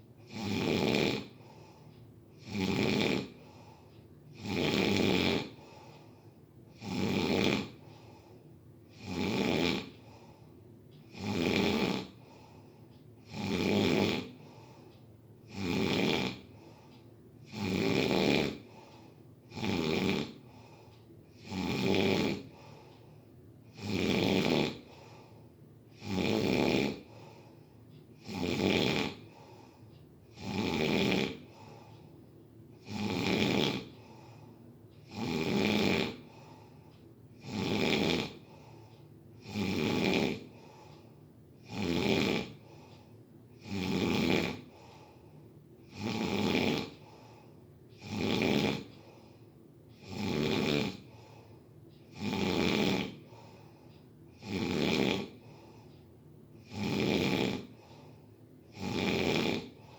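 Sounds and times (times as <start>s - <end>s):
person snoring: 0.2s - 8.3s, 8.9s - 10.4s, 11.1s - 22.9s, 23.6s - 27.6s, 28.2s - 32.0s, 32.7s - 36.8s, 37.4s - 49.4s, 50.0s - 55.9s, 56.6s - 59.9s.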